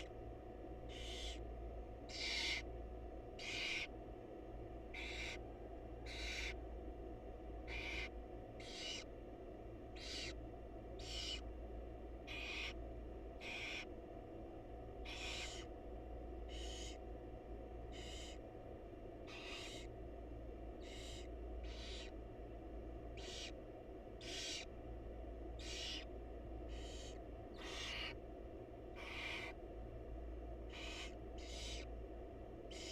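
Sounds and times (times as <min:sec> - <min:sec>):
low electrical hum: 0:00.0 - 0:32.9
owl nestlings hissing: 0:00.9 - 0:01.4, 0:02.1 - 0:02.7, 0:03.4 - 0:03.9, 0:04.9 - 0:05.4, 0:06.0 - 0:06.6, 0:07.6 - 0:09.1, 0:10.0 - 0:10.4, 0:11.0 - 0:11.4, 0:12.3 - 0:12.8, 0:13.4 - 0:13.9, 0:15.0 - 0:15.7, 0:16.5 - 0:17.0, 0:17.9 - 0:18.4, 0:19.3 - 0:19.9, 0:20.8 - 0:22.2, 0:23.2 - 0:23.6, 0:24.2 - 0:24.7, 0:25.6 - 0:26.1, 0:26.7 - 0:28.2, 0:29.0 - 0:29.6, 0:30.6 - 0:31.9, 0:32.7 - 0:32.9.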